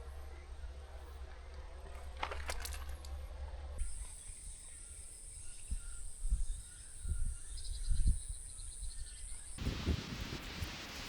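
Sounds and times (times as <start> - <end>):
wind rumble on microphone: 4.9 - 11.0.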